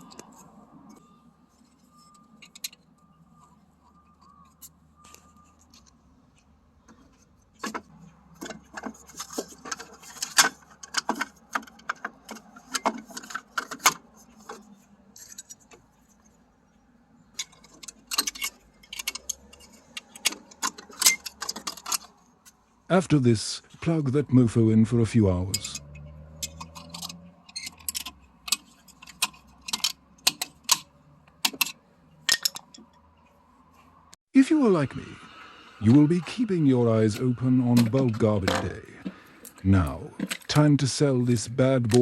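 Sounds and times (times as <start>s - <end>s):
small metal parts clicking: 1.8s - 3.0s, 17.3s - 22.6s, 25.5s - 33.0s.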